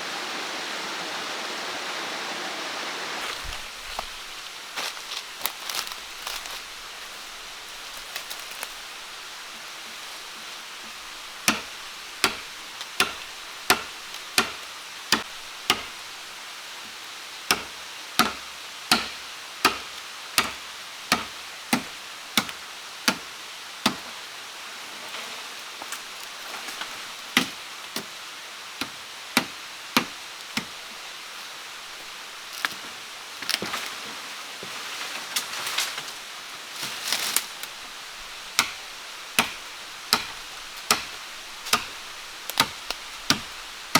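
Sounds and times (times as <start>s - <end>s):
steady hiss: 0.0s - 43.9s
blade chopping wood: 10.9s - 16.0s, 17.5s - 23.2s, 38.6s - 43.6s.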